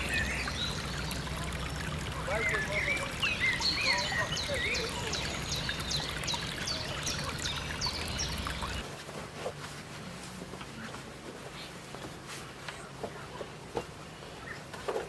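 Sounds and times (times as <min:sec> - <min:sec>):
water trickling and pouring: 0:00.0 - 0:08.8.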